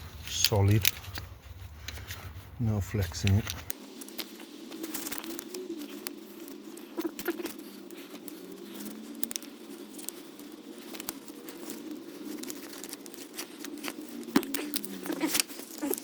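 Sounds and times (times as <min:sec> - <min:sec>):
low steady hum: 0:00.0 - 0:04.3.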